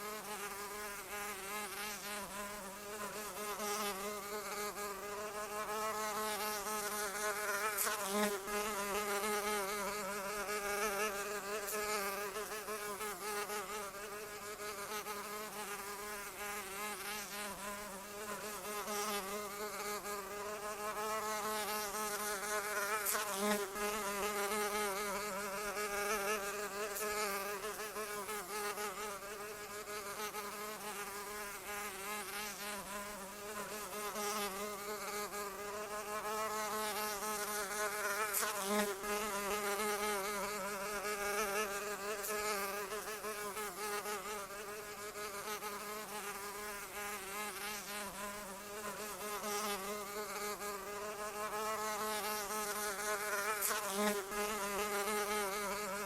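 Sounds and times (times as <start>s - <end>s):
flying insect buzzing: 0.0s - 56.0s.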